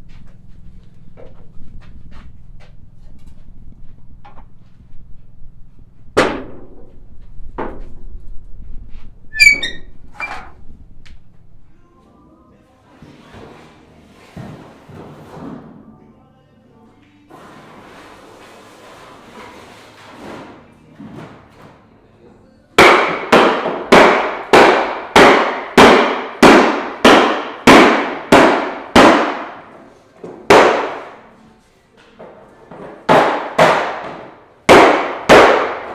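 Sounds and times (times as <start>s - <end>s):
high-pitched metallic squeak: 9.3s - 10.6s
knocks and thunks on bodywork: 22.8s - 29.6s, 33.1s - 35.9s
hammer striking steel: 22.8s - 29.7s, 30.5s - 31.2s, 33.2s - 35.9s.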